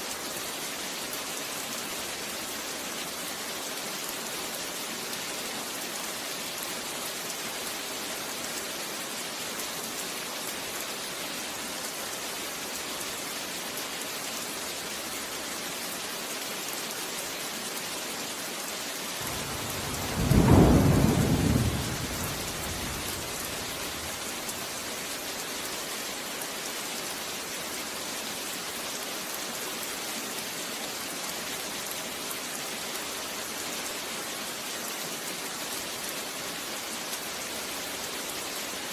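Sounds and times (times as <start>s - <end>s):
steady rain falling: 0.0s - 38.9s
thunder rumble: 19.2s - 24.6s.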